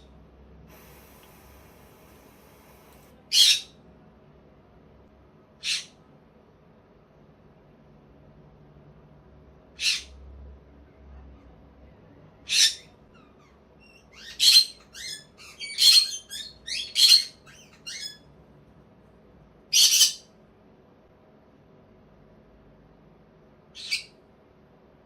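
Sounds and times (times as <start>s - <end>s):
parrot squeaking: 3.3s - 3.7s, 12.5s - 18.2s.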